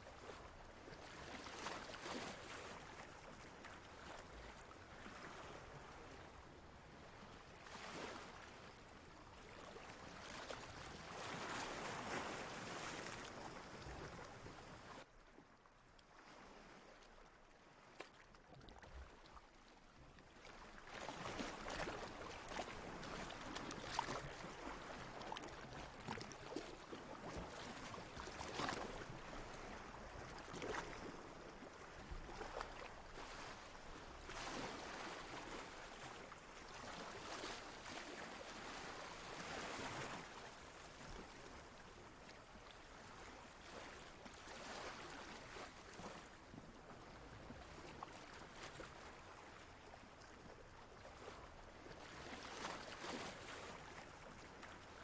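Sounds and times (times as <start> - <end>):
sea water lapping: 0.1 - 15.0, 16.1 - 55.0.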